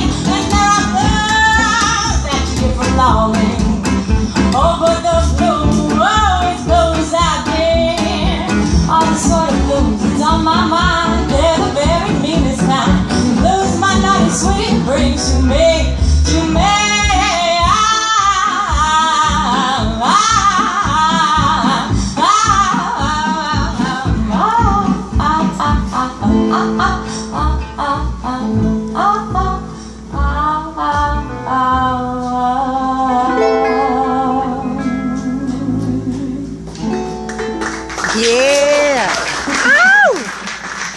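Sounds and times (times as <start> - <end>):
live band playing blues: 0.0 - 40.9
guitar chords: 32.8 - 38.1.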